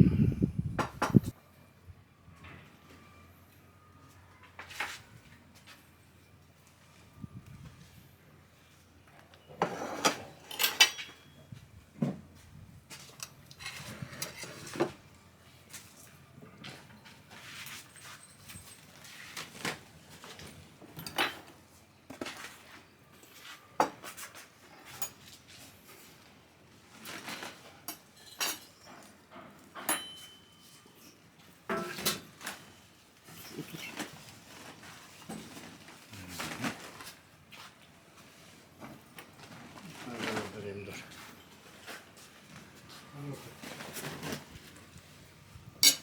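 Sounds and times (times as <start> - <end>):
dishes and cutlery clinking: 9.5 - 11.4, 27.8 - 34.1, 45.8 - 46.0.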